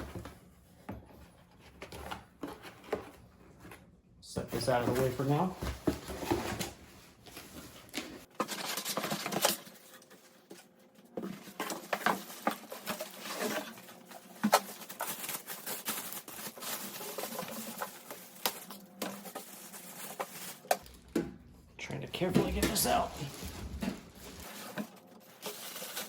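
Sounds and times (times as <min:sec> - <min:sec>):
packaging rustling and crinkling: 0:04.4 - 0:26.0.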